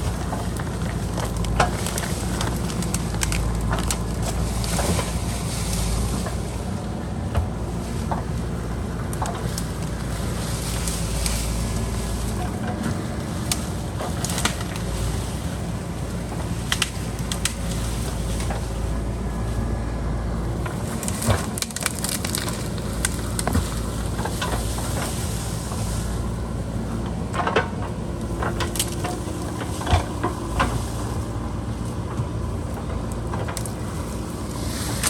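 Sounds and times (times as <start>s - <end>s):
diesel engine running: 0.0s - 35.0s
earth and stone cracking: 0.1s - 5.9s, 20.6s - 24.7s.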